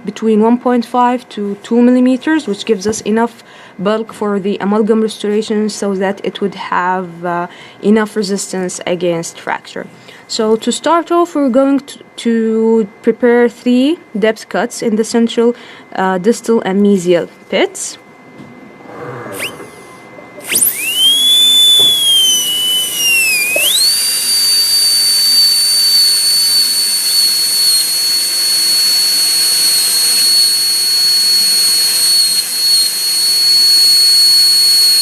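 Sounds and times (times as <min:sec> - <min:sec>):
dental drill whine: 0:19.4 - 0:19.8, 0:20.4 - 0:35.0.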